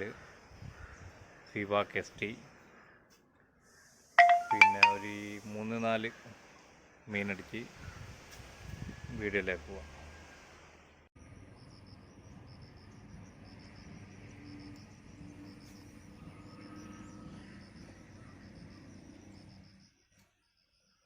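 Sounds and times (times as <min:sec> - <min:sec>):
insects chirping: 0:11.2 - 0:21.0.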